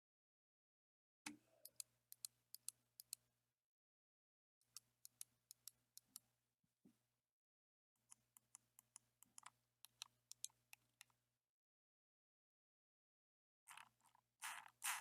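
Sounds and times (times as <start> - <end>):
computer mouse clicking: 1.3 - 3.2, 4.7 - 6.2, 8.1 - 11.2.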